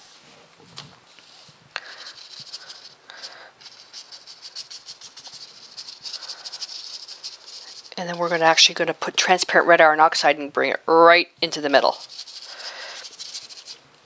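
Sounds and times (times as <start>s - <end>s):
scratchy rubbing on paper: 1.3s - 8.8s, 11.6s - 13.8s.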